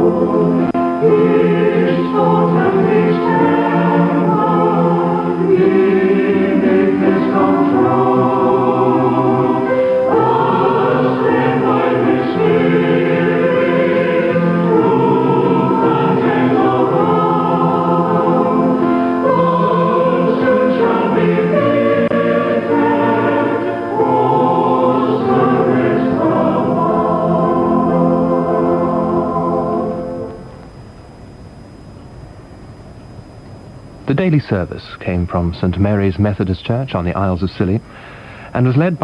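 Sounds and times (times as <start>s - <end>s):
choir singing in harmony: 0.0s - 30.6s.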